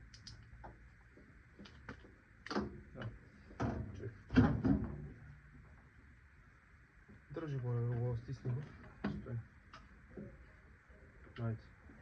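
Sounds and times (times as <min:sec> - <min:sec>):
knocks and clatters of tools: 0:01.6 - 0:05.1.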